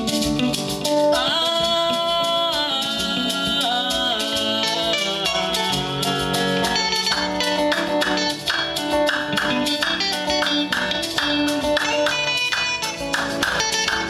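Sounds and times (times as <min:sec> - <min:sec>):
instrumental guitar music with beat: 0:00.0 - 0:14.0.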